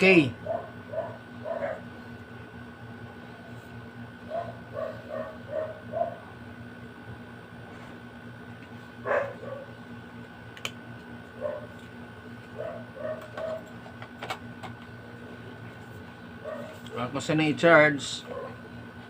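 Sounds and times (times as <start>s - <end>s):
electrical hum: 0.0s - 19.0s
dog yipping and barking: 0.4s - 1.8s, 4.3s - 6.2s, 9.1s - 9.7s, 11.4s - 11.7s, 12.6s - 13.6s.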